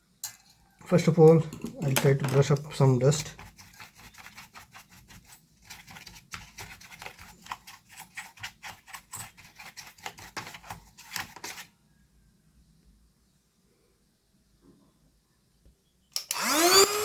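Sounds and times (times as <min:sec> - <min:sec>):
brush scrubbing: 0:02.4 - 0:11.7.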